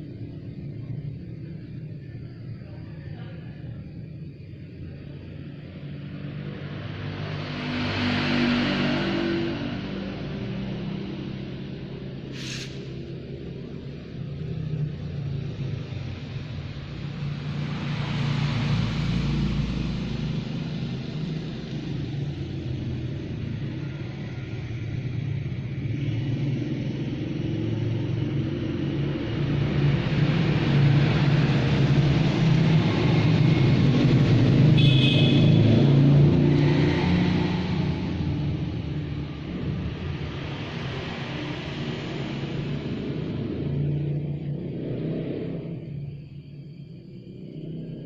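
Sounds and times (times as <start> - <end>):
motorcycle engine rumbling: 19.7 - 36.4.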